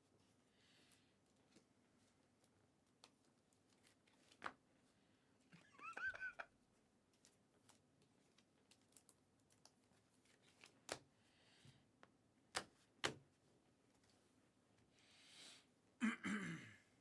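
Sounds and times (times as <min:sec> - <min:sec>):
cards and objects clicking on table: 0:07.2 - 0:11.1, 0:12.5 - 0:13.2.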